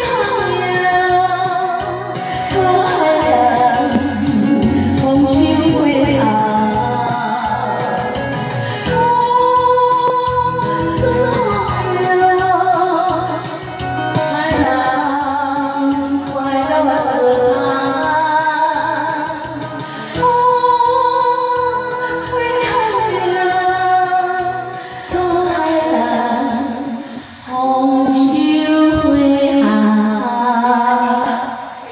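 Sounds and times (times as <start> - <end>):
instrumental backing: 0.0 - 31.0
woman singing: 0.0 - 31.9.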